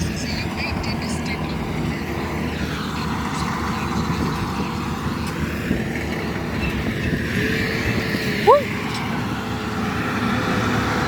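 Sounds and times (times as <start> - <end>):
engine rumble: 0.0 - 11.0.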